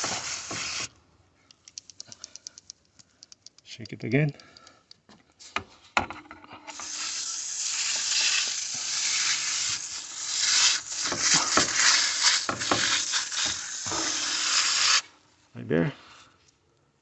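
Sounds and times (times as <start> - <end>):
aerosol can spraying: 0.0 - 0.9, 6.7 - 15.1.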